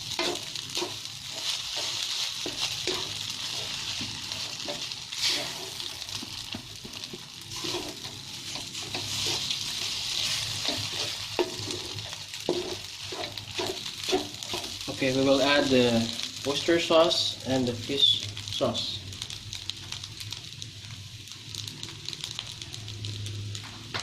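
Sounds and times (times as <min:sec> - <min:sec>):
utensil scraping a pan: 0:00.0 - 0:06.0, 0:07.5 - 0:15.1
rice sizzling in a pan: 0:00.0 - 0:24.0.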